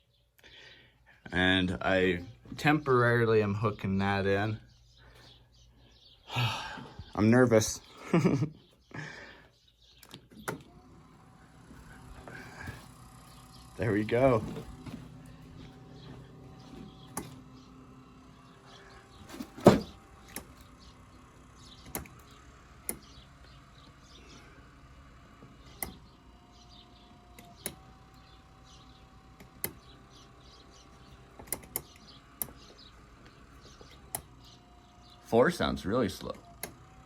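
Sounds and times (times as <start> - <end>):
electric motor hum and whine: 1.3 - 37.0
sharp clicks and knocks: 14.4 - 17.4, 21.8 - 23.1, 31.4 - 34.3.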